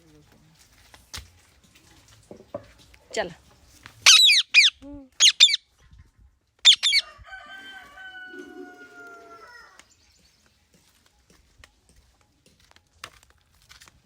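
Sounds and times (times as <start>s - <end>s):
parakeet screeching: 4.1s - 5.6s, 6.7s - 7.0s
rooster crowing: 6.9s - 9.8s.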